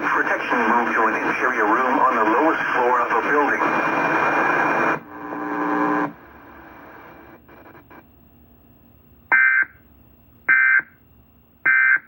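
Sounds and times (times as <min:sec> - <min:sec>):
faint radio static: 0:00.0 - 0:08.1.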